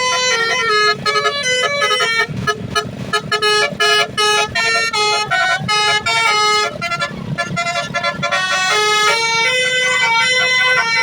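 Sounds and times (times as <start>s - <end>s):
bus musical horn playing a tune: 0.0s - 11.0s.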